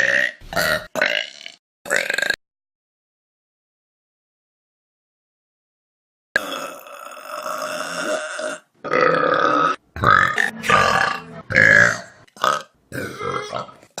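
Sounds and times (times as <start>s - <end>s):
person burping loudly: 0.0s - 2.4s, 6.4s - 13.8s.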